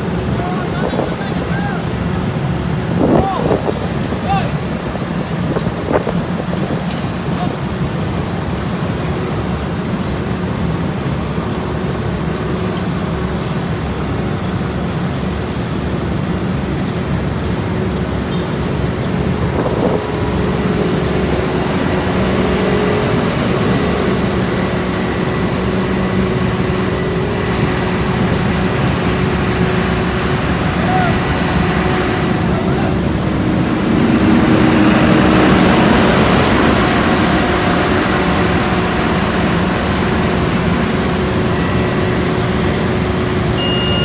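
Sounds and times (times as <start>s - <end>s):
diesel engine drone: 0.0s - 44.0s
faint steady whine: 17.8s - 44.0s.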